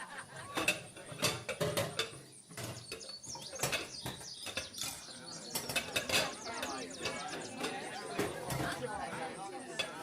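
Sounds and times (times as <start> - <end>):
bird chirps: 2.2 - 8.4.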